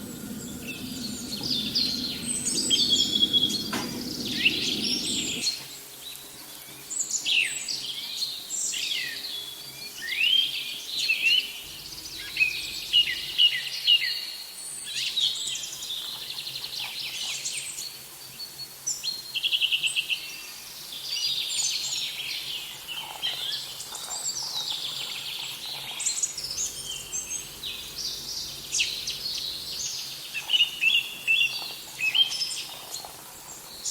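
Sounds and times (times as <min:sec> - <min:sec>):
low hum: 0:00.0 - 0:05.5.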